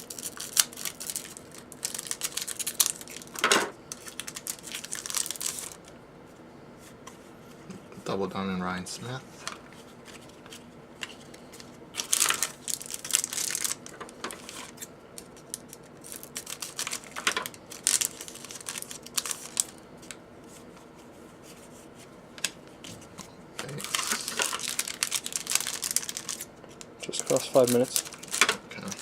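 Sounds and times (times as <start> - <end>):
cards rustling: 0.0 - 5.8, 9.4 - 20.7, 23.6 - 29.0
wrappers crinkling: 0.0 - 5.9, 10.0 - 20.1, 23.6 - 29.0.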